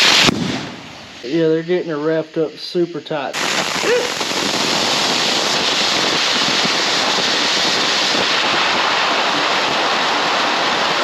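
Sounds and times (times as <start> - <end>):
loud steady rushing hiss: 0.0 - 11.0.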